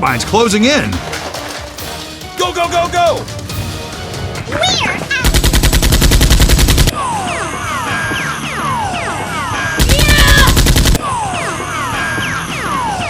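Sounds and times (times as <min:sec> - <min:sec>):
automatic gunfire bursts: 0:05.2 - 0:06.9, 0:09.8 - 0:11.0.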